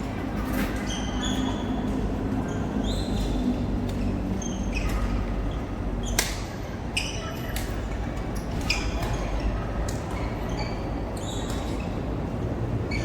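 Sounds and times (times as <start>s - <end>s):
shoes squeaking on court floor: 10.1s - 12.0s.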